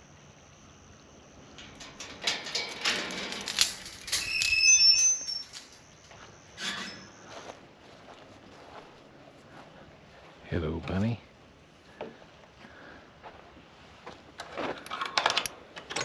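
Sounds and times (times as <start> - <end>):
rustling and clattering of handling: 1.5 - 8.7
brief high squeak: 4.0 - 7.4.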